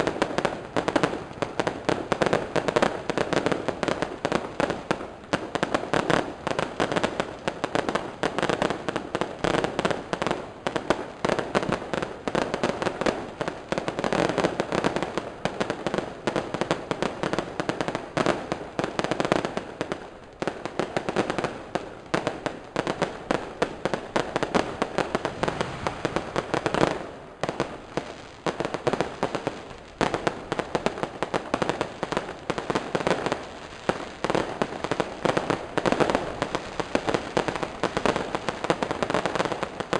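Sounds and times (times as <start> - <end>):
fireworks crackling and banging: 0.0 - 39.9.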